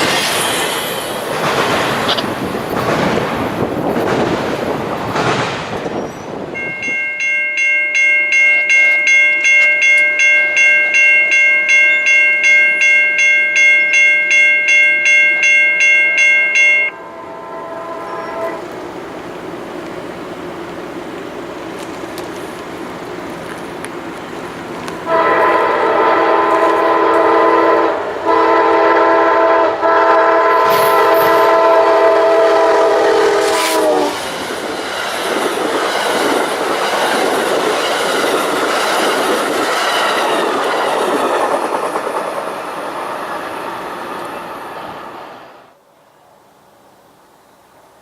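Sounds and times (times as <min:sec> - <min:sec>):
train wheels rumbling on rails: 0:00.0 - 0:07.2, 0:16.1 - 0:45.7
locomotive horn: 0:16.8 - 0:18.8, 0:25.0 - 0:34.2.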